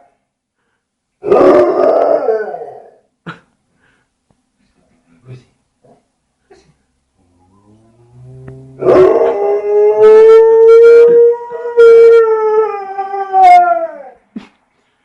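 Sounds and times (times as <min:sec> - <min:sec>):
dog howling: 0:07.7 - 0:14.2.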